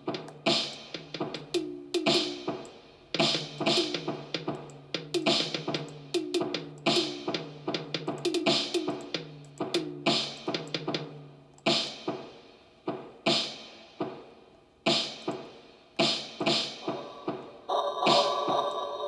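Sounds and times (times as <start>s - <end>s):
rhythmic drum hits: 0.0s - 19.0s.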